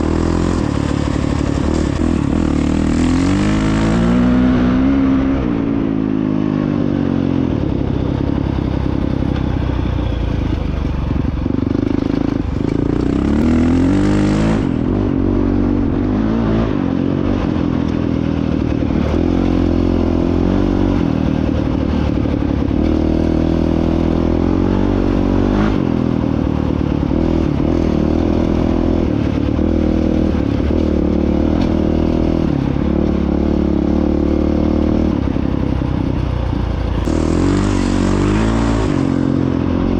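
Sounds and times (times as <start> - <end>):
dirt bike engine revving: 0.0 - 6.2, 11.6 - 17.6, 18.6 - 35.4, 36.9 - 39.9.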